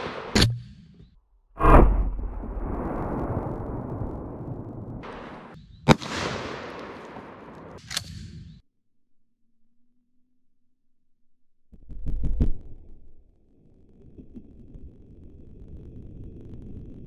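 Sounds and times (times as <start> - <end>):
sharp crack: 1.6 - 8.6
rolling gunshot echo: 5.0 - 7.8
shotgun blast: 5.0 - 7.8.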